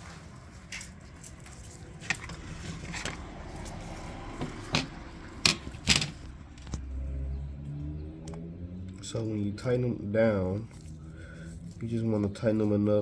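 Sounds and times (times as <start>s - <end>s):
metal parts and tools clicking: 4.7s - 6.8s.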